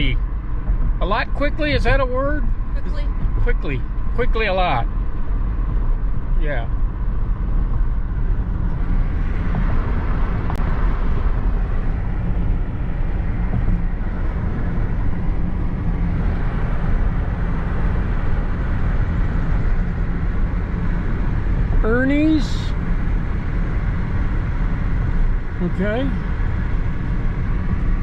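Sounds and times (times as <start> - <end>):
truck engine rumble: 0.0 - 28.0.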